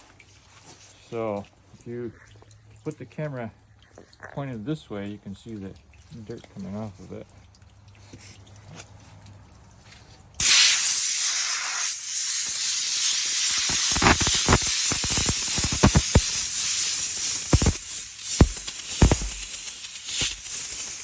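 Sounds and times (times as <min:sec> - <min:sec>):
compressed air blow gun hissing: 0:10.4 - 0:21.0.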